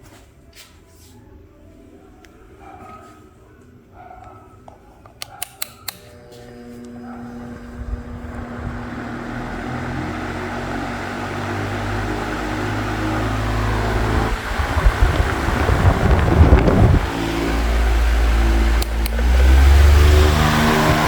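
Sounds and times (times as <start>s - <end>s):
fan switch clicks: 5.1s - 6.2s, 18.7s - 19.6s
fan motor humming: 5.4s - 21.0s
rush of air from fan blades: 10.9s - 21.0s.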